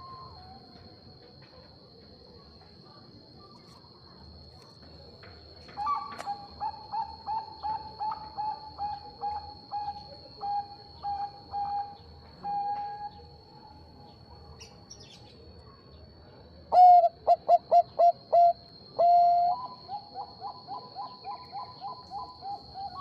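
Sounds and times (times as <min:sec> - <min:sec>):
dove cooing: 0:05.8 - 0:13.2, 0:16.7 - 0:23.0.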